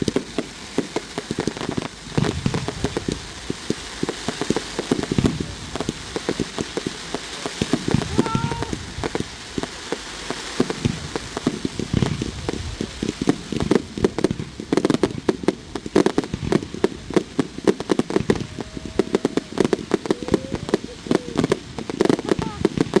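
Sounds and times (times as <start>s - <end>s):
fireworks bangs and crackles: 0.0s - 23.0s.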